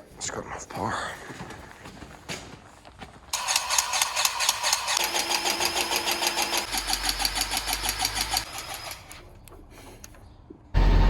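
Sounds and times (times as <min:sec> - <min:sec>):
grease gun pump chattering: 0:03.4 - 0:09.2.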